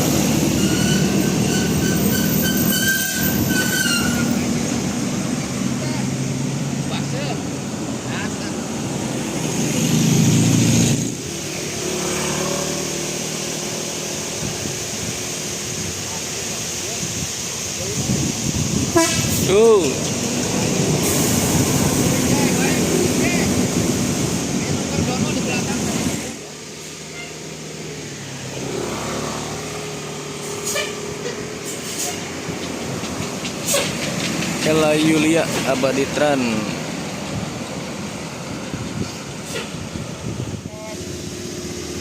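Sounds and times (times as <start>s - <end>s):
engine and road noise: 0.0s - 42.0s
vehicle passing close: 4.3s - 16.0s, 27.5s - 42.0s.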